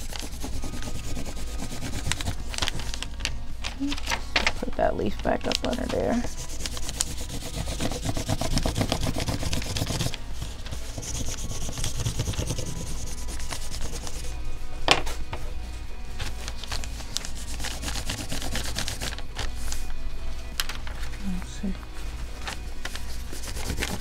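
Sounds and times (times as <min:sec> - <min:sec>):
crayon scribbling on paper: 0:00.0 - 0:03.0, 0:05.7 - 0:14.4, 0:16.9 - 0:19.7, 0:22.9 - 0:24.0.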